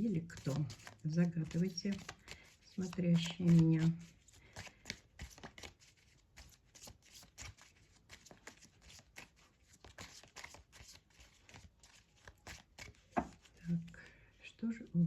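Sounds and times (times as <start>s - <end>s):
cards being shuffled: 0.2s - 14.0s.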